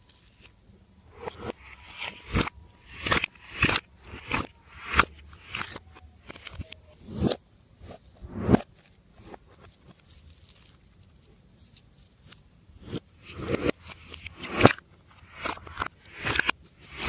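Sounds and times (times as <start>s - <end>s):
sticky clicks: 1.1s - 7.4s, 12.8s - 17.0s.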